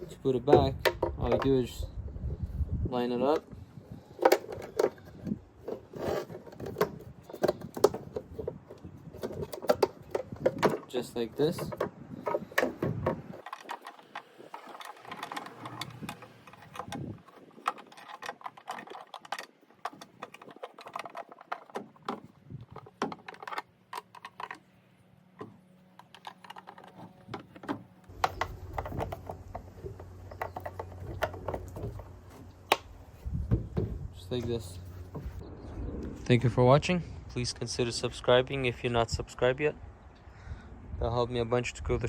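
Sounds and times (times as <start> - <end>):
plastic parts clicking: 3.3 - 24.7, 25.4 - 32.9
steady low hum: 28.0 - 38.7.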